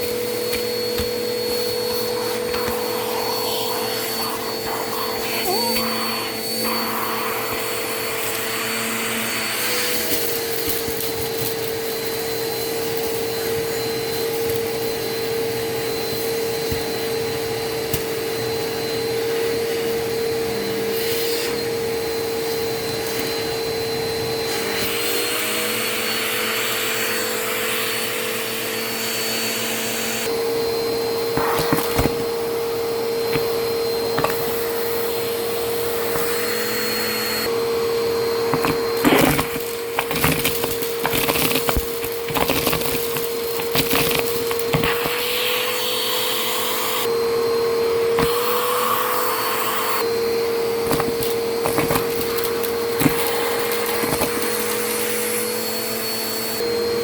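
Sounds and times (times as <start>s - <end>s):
vacuum cleaner running: 0.0s - 57.0s
debris crackling up vacuum: 30.6s - 45.6s, 50.0s - 55.5s.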